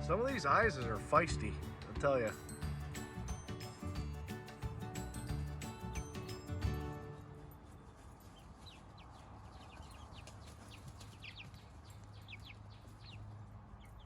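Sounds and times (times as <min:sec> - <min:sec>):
chicks peeping: 0:07.6 - 0:14.0.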